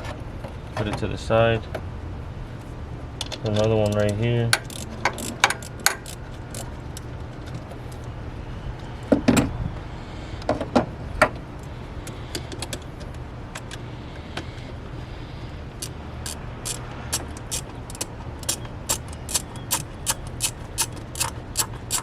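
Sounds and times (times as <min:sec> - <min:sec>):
low steady hum: 0:00.0 - 0:22.0
metallic clicks of socket wrench: 0:03.2 - 0:07.0, 0:15.8 - 0:22.0.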